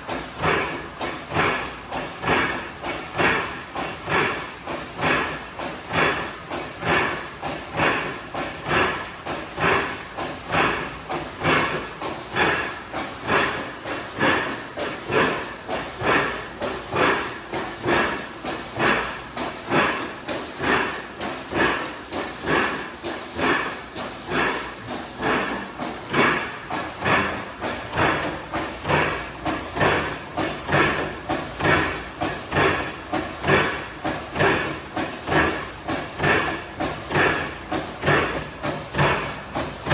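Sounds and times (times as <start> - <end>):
filling machine hisses and clacks: 0.0 - 39.9.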